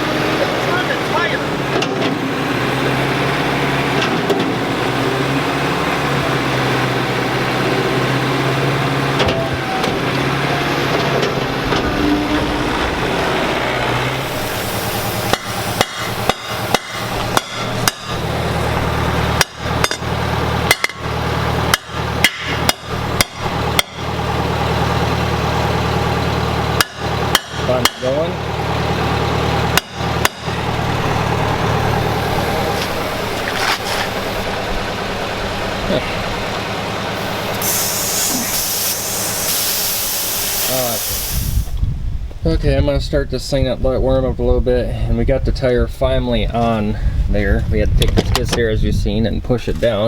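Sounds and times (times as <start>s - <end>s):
steady running noise with hum: 0.0s - 50.0s
hammer blows: 9.1s - 24.2s, 26.8s - 28.4s.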